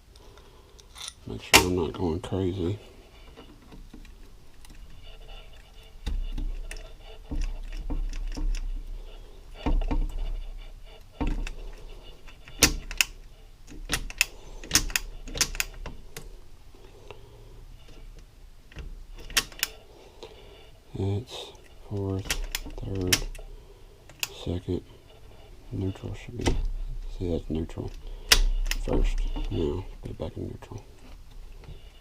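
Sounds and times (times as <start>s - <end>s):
shift lever clicking and clanking: 11.2s - 16.3s, 18.7s - 19.8s, 21.9s - 23.4s, 27.4s - 30.3s.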